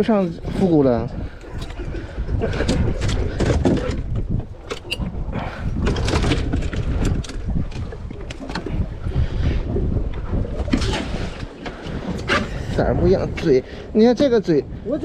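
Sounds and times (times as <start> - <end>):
wind rumbling on microphone: 0.0 - 15.0
clicks and knocks of gear: 2.8 - 5.2.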